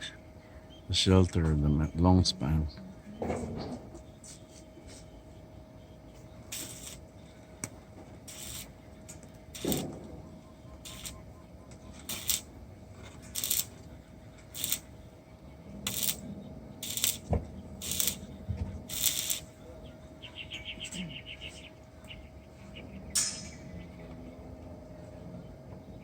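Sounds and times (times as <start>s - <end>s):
faint steady hum: 0.0s - 26.0s
rasping strokes on metal: 8.3s - 8.7s, 13.3s - 13.7s, 15.9s - 16.2s, 16.8s - 17.2s, 17.8s - 18.2s, 18.9s - 19.4s.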